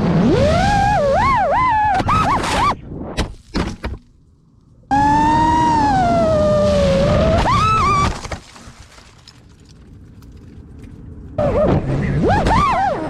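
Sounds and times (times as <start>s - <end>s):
drone motors whining: 0.0s - 2.8s, 4.8s - 8.4s
second drone motor whine: 4.9s - 8.1s.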